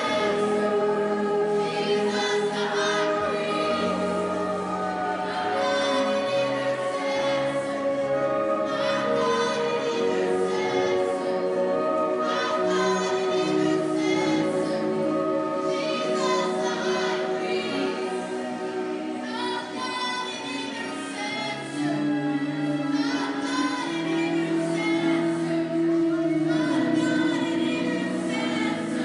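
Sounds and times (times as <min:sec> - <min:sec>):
keyboard chords: 0:00.0 - 0:20.0, 0:21.0 - 0:29.0
voices singing: 0:00.0 - 0:29.0.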